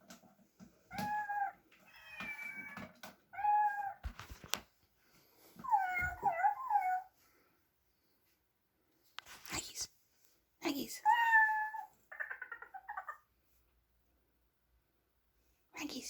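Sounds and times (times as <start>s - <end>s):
cat meowing: 0.9s - 4.0s, 5.6s - 7.1s, 11.0s - 13.1s.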